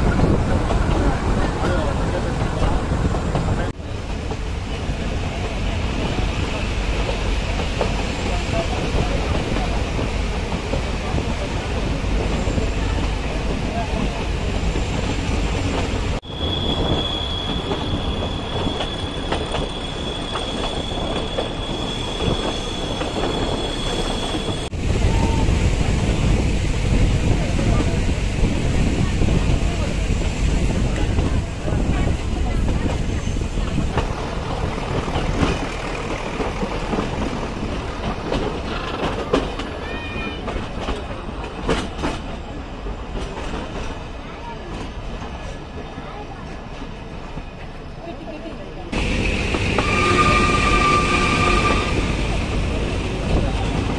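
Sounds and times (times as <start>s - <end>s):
train rumbling on rails: 0.0s - 53.9s
high wheel squeal: 16.2s - 24.7s, 49.6s - 52.4s.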